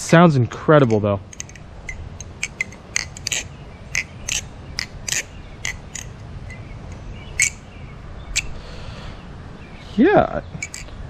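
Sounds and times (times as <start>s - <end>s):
butterfly knife clacking: 0.8s - 7.7s, 8.3s - 8.5s, 10.6s - 11.0s.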